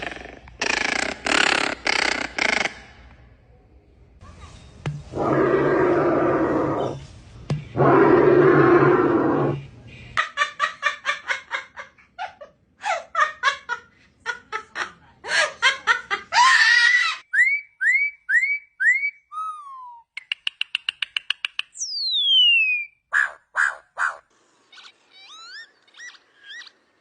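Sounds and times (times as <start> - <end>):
bird whistles: 21.8 - 23.0.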